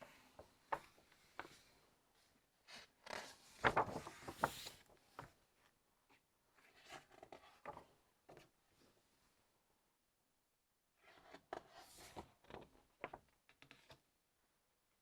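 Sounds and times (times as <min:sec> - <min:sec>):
book pages turning: 0:03.0 - 0:04.8
soft slaps of paper: 0:03.6 - 0:05.3.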